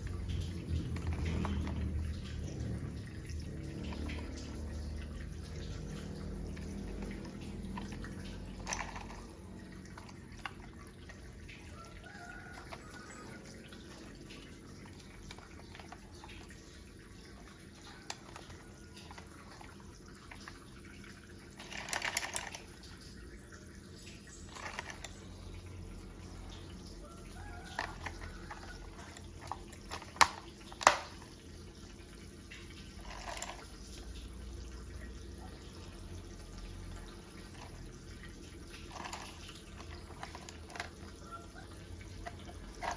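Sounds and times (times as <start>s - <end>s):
plastic toy parts clicking: 5.8s - 11.7s, 18.1s - 19.7s, 21.6s - 22.7s, 24.5s - 25.3s, 27.7s - 31.3s, 33.0s - 33.7s, 38.8s - 41.2s, 42.0s - 42.9s.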